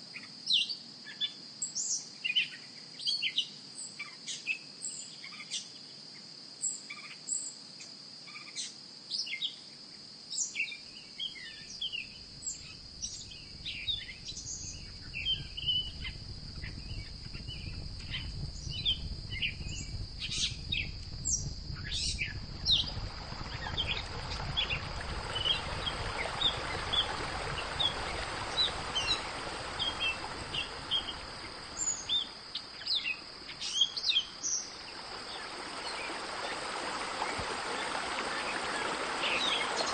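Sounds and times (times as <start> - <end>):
insect drone: 0.0 - 39.9
small birds chirping: 10.6 - 39.9
running water rushing: 12.3 - 39.9.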